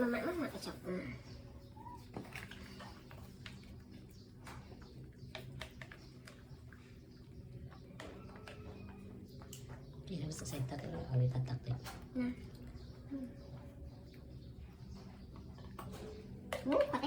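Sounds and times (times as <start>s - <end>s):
small irregular clicks and taps: 4.4s - 6.6s.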